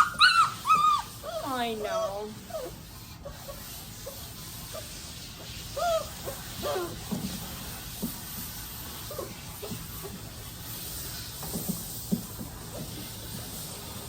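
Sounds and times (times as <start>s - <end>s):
puppy whimpering: 0.0s - 5.0s, 5.7s - 7.0s, 9.0s - 9.8s
water spraying: 1.0s - 14.0s.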